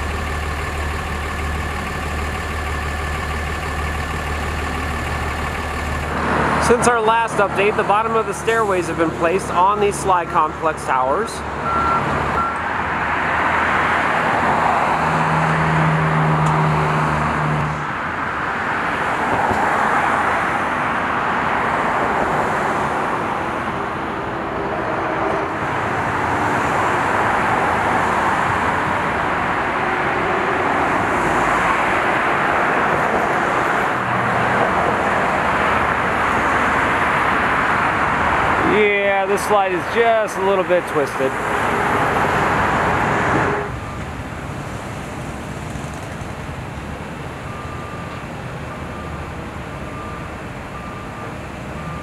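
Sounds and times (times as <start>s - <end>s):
deep engine hum: 0.0s - 6.8s
road traffic with cars passing: 0.0s - 52.0s.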